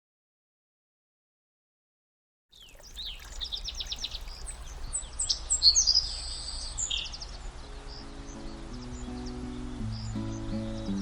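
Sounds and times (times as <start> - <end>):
songbirds chirping and trilling: 2.6 - 11.0.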